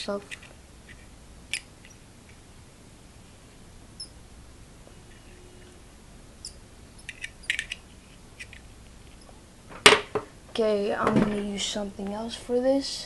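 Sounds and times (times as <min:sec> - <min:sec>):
pliers clicking and scraping metal: 0:06.4 - 0:07.8.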